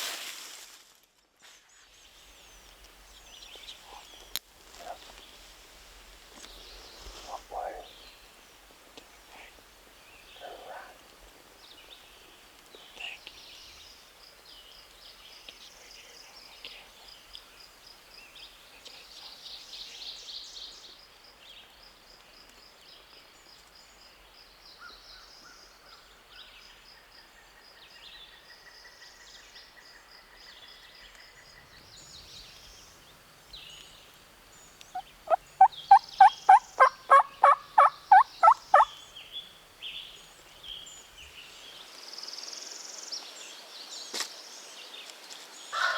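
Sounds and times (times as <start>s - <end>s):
wild turkey calling: 6.5s - 8.4s, 33.8s - 39.5s
faint songbird chirps: 11.6s - 45.7s.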